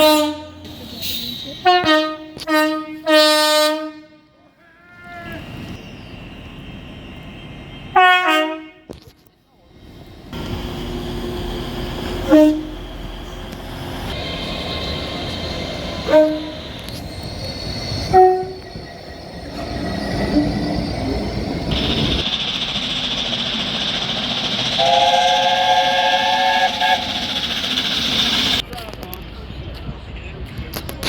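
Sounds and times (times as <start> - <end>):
train horn blasts: 0.0 - 0.6, 1.6 - 4.3, 7.9 - 9.1, 12.2 - 13.0, 16.0 - 16.7, 18.1 - 18.7, 24.8 - 27.5
train rumbling: 0.0 - 31.0.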